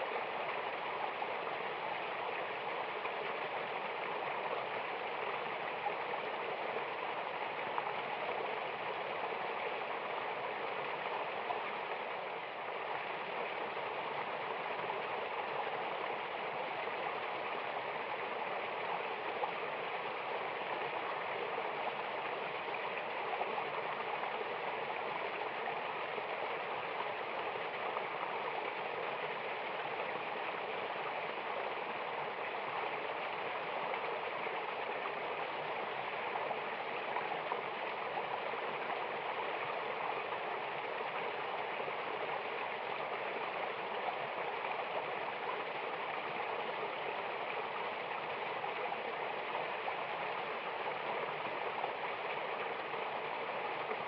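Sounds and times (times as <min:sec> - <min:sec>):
waterfall and stream rushing: 0:00.0 - 0:54.0.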